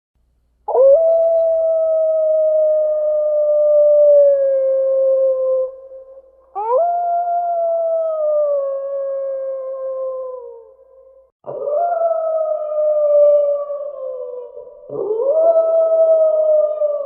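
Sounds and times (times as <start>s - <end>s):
wolf howling: 0.7s - 5.8s, 11.4s - 17.0s.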